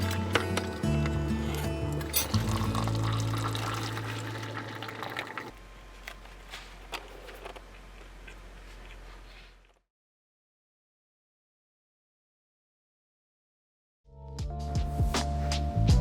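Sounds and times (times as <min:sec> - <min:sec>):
background music with low notes: 0:00.0 - 0:04.6, 0:14.1 - 0:16.0.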